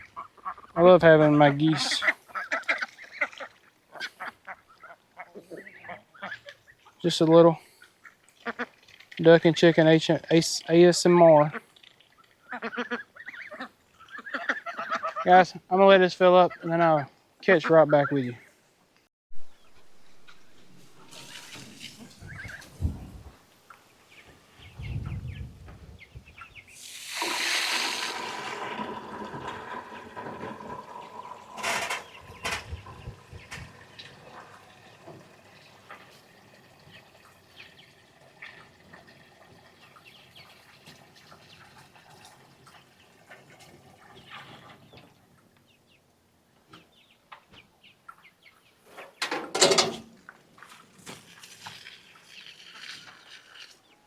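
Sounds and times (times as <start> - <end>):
water rushing from hose into container: 20.4 - 23.0, 26.8 - 44.2, 50.7 - 53.9
poultry chirping: 22.0 - 22.7.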